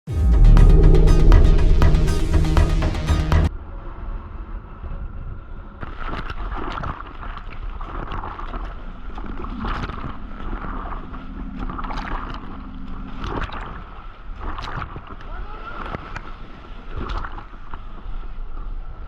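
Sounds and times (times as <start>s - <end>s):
water splashing around boat: 5.8s - 19.0s.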